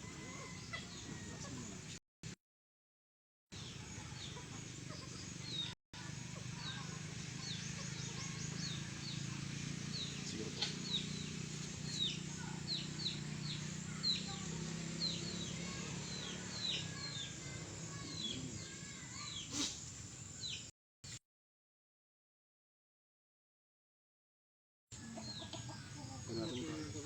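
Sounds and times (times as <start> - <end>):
small birds chirping: 3.6 - 20.7, 25.0 - 27.0.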